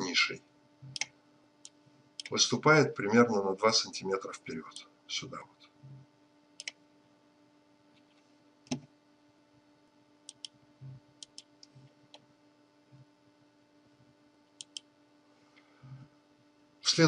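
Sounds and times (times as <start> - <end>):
faint electrical hum: 0.0 - 17.0
computer mouse clicks: 0.9 - 2.3, 6.6 - 6.8, 10.3 - 12.2, 14.6 - 14.9.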